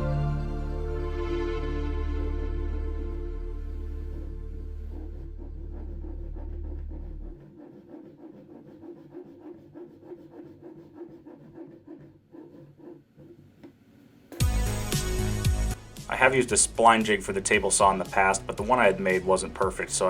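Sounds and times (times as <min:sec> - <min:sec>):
background music: 0:00.0 - 0:06.4, 0:14.4 - 0:20.0
hand tool scraping wood: 0:04.0 - 0:13.4.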